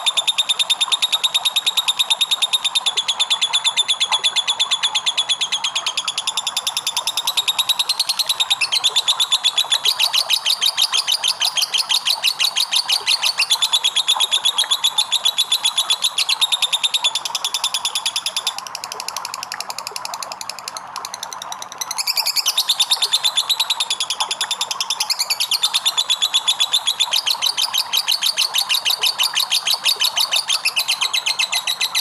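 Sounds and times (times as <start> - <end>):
lovebird chattering trill: 21.8 - 32.0.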